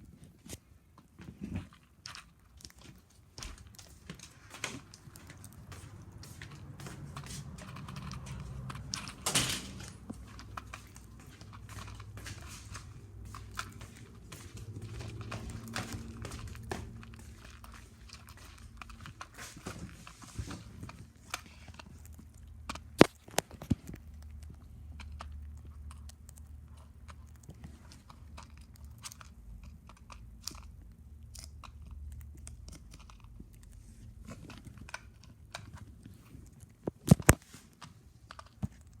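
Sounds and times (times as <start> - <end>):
bird crunching and pecking: 0.0 - 39.0.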